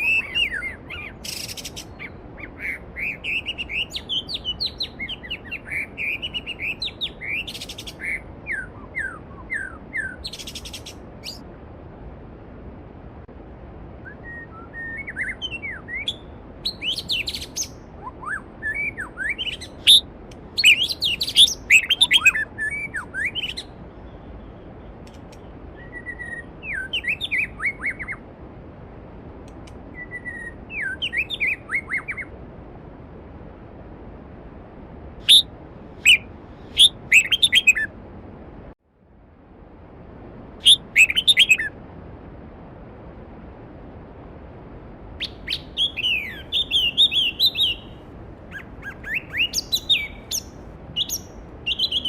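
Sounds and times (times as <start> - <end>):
songbirds singing: 0.0 - 11.5, 14.0 - 28.3, 29.6 - 32.4, 35.2 - 38.0, 40.6 - 41.8, 45.2 - 52.0.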